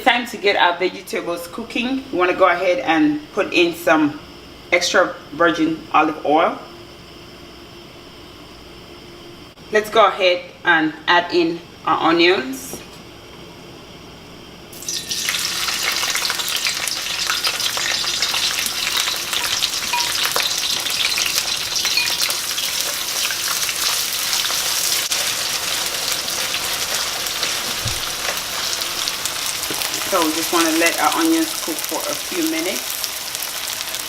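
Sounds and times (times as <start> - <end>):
onions sizzling in oil: 14.7 - 34.0.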